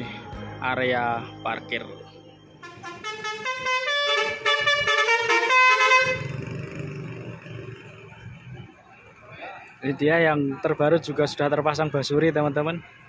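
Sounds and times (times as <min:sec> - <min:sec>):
bus engine running: 0:00.0 - 0:13.0
bus musical horn playing a tune: 0:02.6 - 0:06.4.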